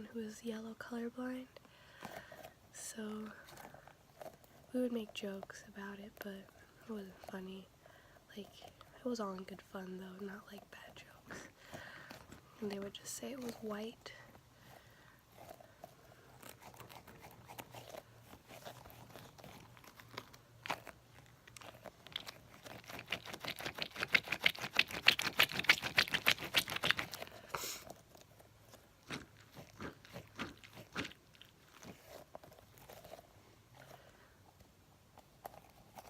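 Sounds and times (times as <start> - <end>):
squishy toy crackling: 10.5 - 36.0.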